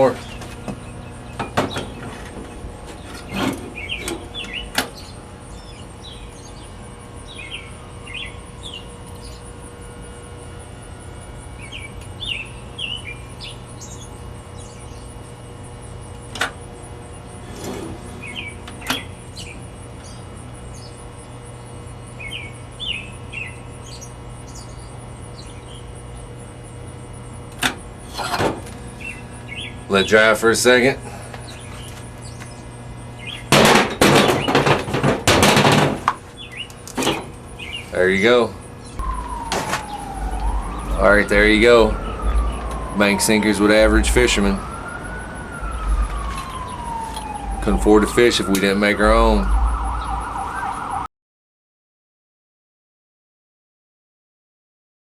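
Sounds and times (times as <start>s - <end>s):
small birds chirping: 0.0s - 17.4s, 18.2s - 27.5s, 28.8s - 33.5s, 36.2s - 47.8s
steady low hum: 0.0s - 51.0s.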